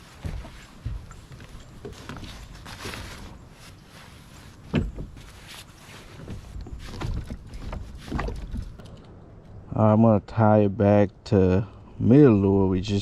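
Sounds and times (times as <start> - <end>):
gear knocking in a kayak: 6.2 - 8.9.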